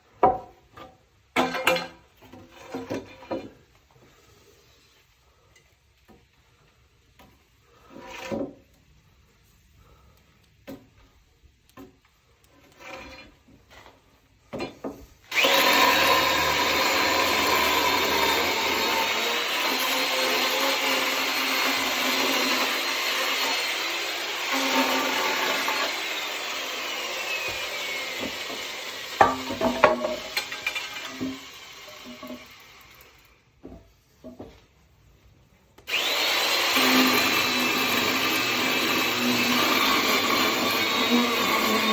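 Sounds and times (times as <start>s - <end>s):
electric chainsaw cutting wood: 15.3s - 33.4s, 35.9s - 41.9s
wood knocking: 29.2s - 30.3s.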